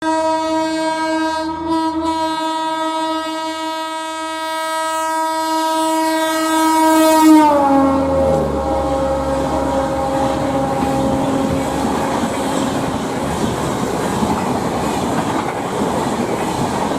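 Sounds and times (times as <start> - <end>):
locomotive horn long blast: 0.0 - 13.4.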